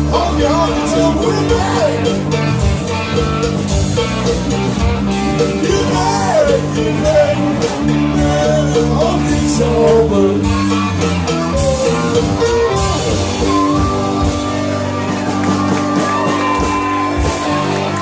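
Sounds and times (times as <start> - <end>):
rock music with guitar and drums: 0.0 - 18.0.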